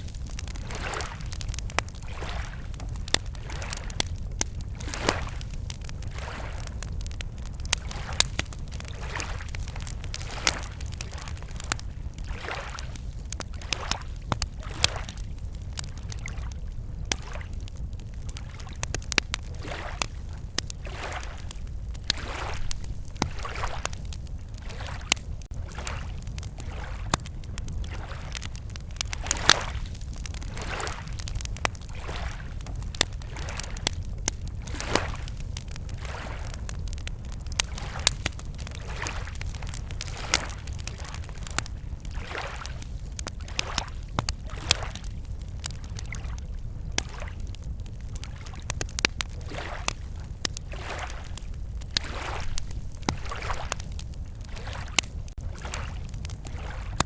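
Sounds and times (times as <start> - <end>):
small waves lapping on shore: 0.0 - 4.1, 4.8 - 6.7, 7.8 - 15.2, 17.1 - 17.5, 19.4 - 36.6, 37.6 - 45.0, 47.0 - 47.5, 49.3 - 57.0
campfire crackling and popping: 0.0 - 57.0.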